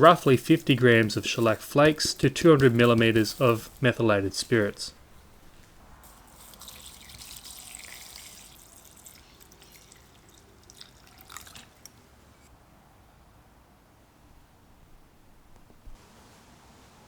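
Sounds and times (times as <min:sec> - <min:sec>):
liquid pouring into jar: 0:06.3 - 0:12.0.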